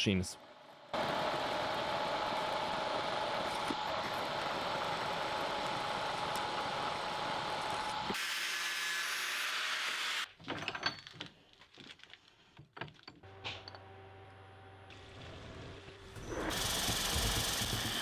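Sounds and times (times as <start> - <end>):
motor humming: 0.4 - 8.2
metal parts clicking and knocking: 10.4 - 13.9
machine tool cutting steel: 16.2 - 18.0.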